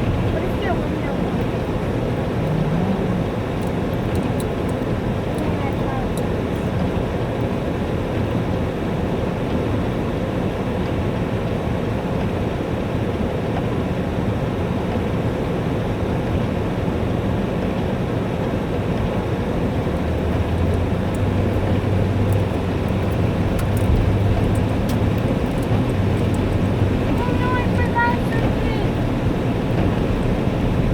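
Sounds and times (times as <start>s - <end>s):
heavy rain pouring: 19.3s - 30.9s
sharp ticks: 20.2s - 28.7s.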